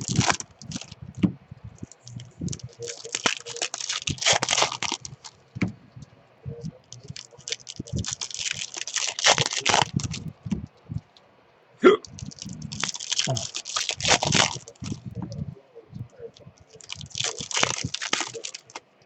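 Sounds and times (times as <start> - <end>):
wrappers crinkling and tearing: 0.0 - 1.0, 1.8 - 5.5, 6.8 - 10.4, 12.1 - 15.2, 16.7 - 18.8.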